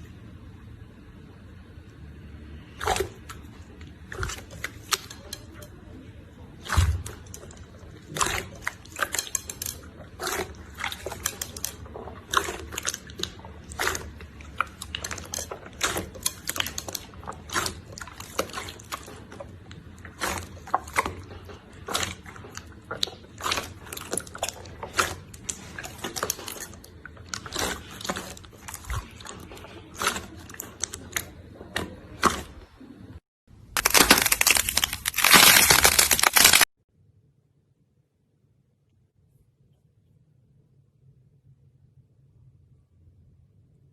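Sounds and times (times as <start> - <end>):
continuous crackling noise: 33.7 - 36.7
slime squished by hand: 33.8 - 36.7.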